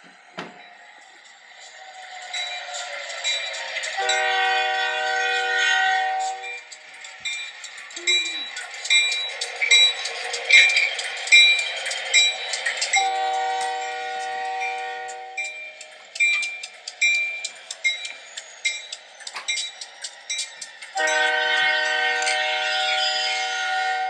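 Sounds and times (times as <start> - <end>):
toy train bell ringing: 0.0 - 24.0
multi-note train horn: 4.0 - 6.6, 13.0 - 15.4, 21.0 - 24.0.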